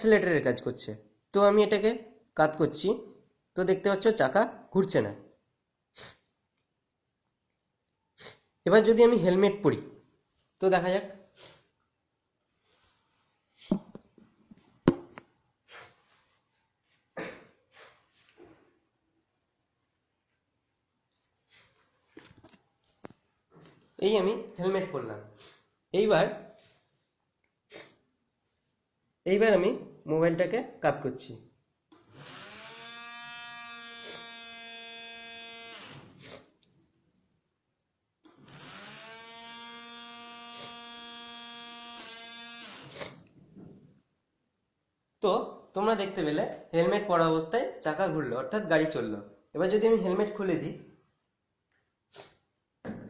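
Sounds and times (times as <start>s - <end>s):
small electric motor whining: 31.9s - 36.5s, 38.3s - 43.2s.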